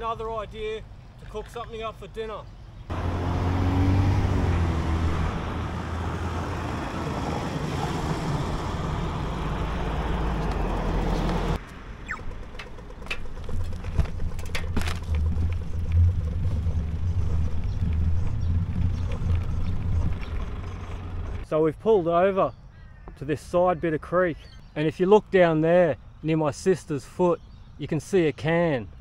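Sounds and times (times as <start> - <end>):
traffic passing: 0.8 - 21.5
low rumble: 8.2 - 21.4.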